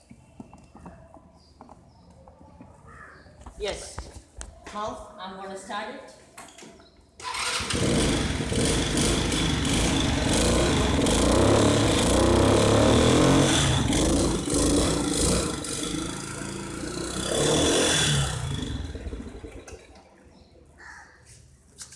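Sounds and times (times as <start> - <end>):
scooter engine revving: 7.2 - 20.0.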